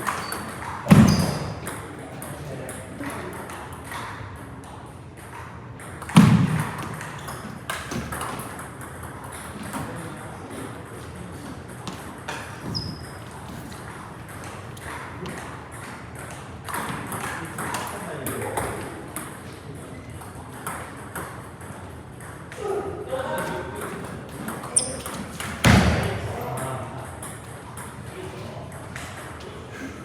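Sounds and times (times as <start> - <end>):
table tennis balls clicking: 0.0 - 22.6.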